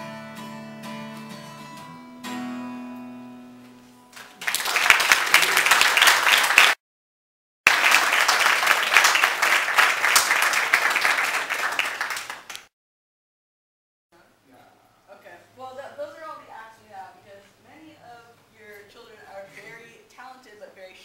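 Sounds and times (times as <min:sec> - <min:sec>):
acoustic guitar chord ringing: 0:00.0 - 0:04.1
audience applauding: 0:04.1 - 0:06.8, 0:07.7 - 0:12.7.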